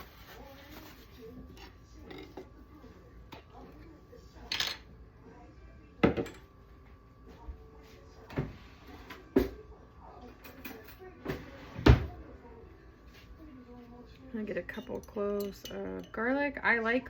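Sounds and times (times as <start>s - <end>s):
dishes and utensils clattering: 0.0s - 2.6s, 10.3s - 12.2s, 14.5s - 16.3s.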